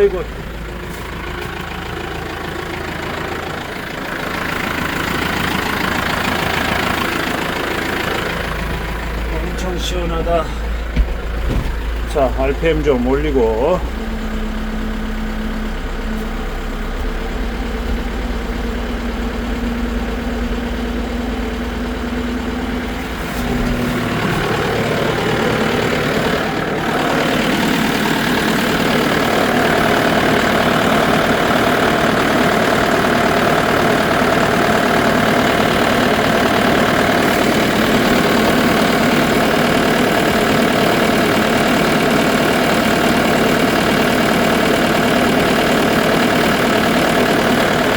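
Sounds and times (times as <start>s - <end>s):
tractor engine revving: 0.0s - 47.9s.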